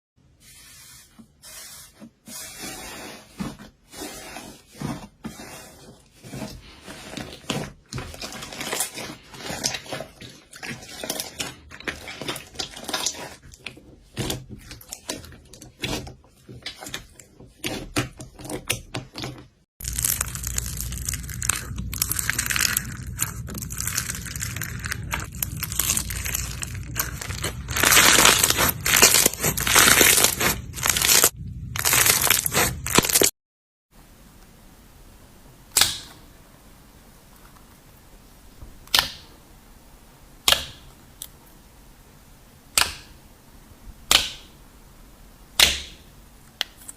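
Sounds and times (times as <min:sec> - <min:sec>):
slime clicking and crackling: 0:07.4 - 0:16.0, 0:16.6 - 0:33.3.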